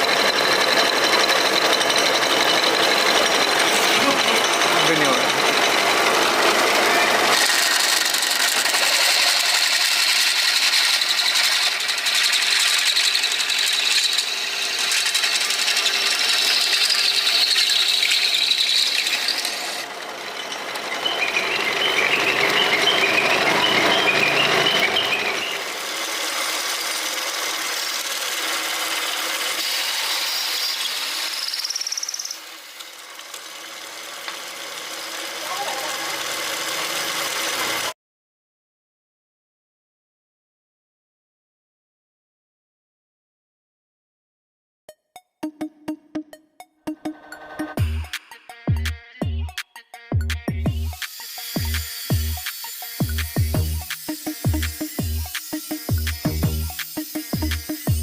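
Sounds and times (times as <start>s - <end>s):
power tool whining on metal: 0.0s - 38.0s, 50.6s - 58.0s.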